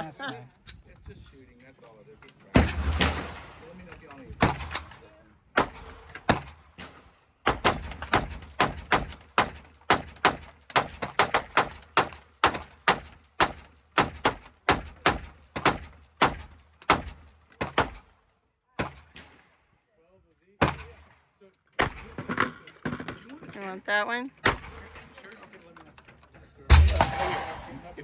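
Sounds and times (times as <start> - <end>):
gunshots: 2.6 - 3.7, 4.4 - 5.0, 5.6 - 18.0, 21.8 - 22.2, 26.7 - 28.0.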